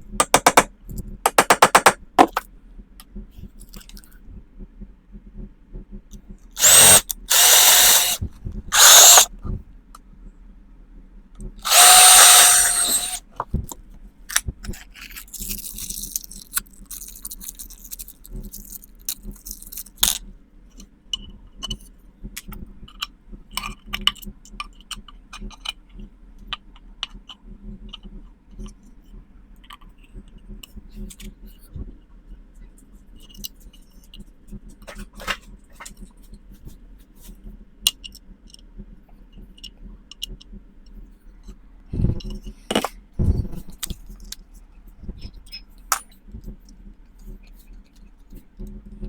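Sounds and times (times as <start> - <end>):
power drill whining: 6.6 - 9.3, 11.6 - 13.2.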